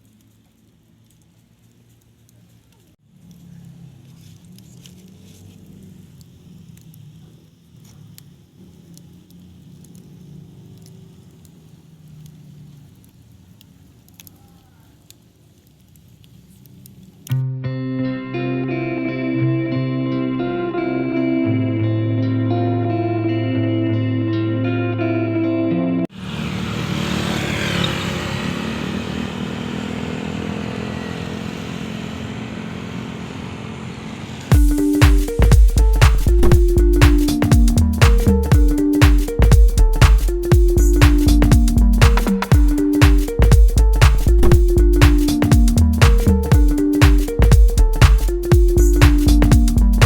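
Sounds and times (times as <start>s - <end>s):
steady dense hiss: 0.0s - 17.2s, 33.9s - 50.0s
guitar music: 17.3s - 26.1s, 34.5s - 50.0s
motorcycle engine running: 26.2s - 50.0s
drips ticking: 34.5s - 50.0s.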